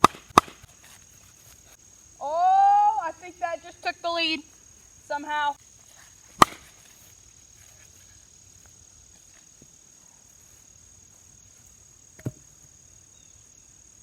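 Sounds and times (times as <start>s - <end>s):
crickets trilling: 0.0s - 14.0s
dull thump: 6.3s - 6.9s, 12.2s - 12.7s.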